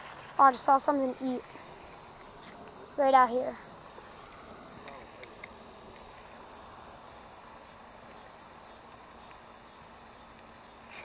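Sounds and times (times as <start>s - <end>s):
faint outdoor background noise: 0.0s - 11.0s
high-pitched insect chorus: 0.0s - 11.0s.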